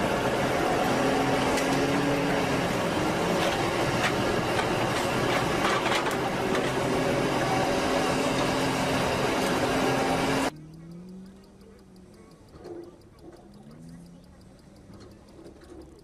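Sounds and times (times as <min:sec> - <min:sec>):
vehicle engine running: 0:00.0 - 0:16.0.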